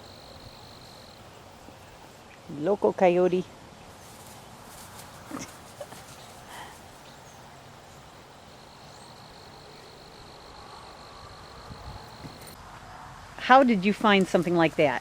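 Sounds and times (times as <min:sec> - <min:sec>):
insect high-pitched trill: 0:00.0 - 0:01.6, 0:05.8 - 0:12.6
faint outdoor background noise: 0:00.0 - 0:15.0.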